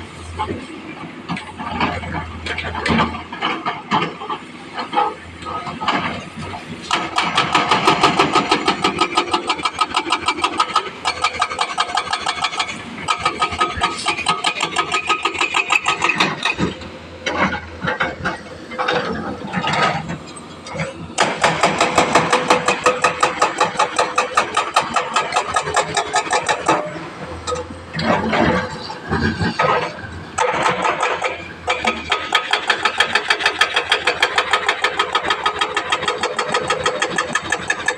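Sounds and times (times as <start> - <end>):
hydraulic rock breaker hammering: 6.9 - 37.9.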